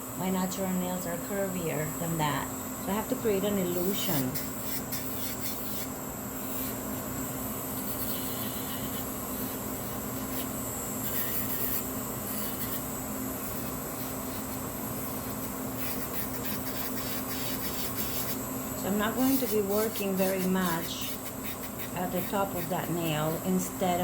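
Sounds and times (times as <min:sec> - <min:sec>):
nail file rubbing and scratching: 0:03.8 - 0:06.8, 0:07.8 - 0:23.5.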